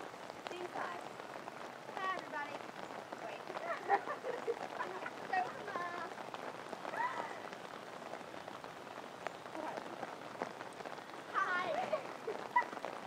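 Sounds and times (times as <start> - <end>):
water spattering onto a surface: 0.0 - 13.0
voices calling out: 1.9 - 7.8, 9.2 - 13.0.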